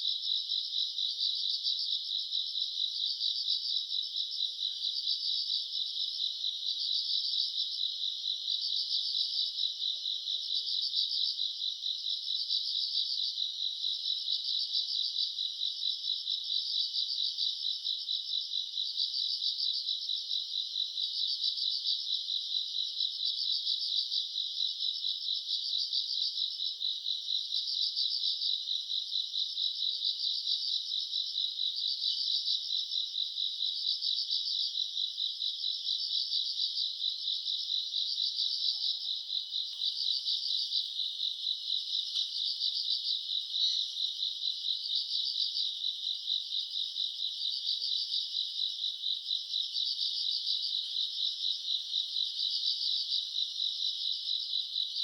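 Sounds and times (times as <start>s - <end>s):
insects chirring: 38.2s - 55.0s.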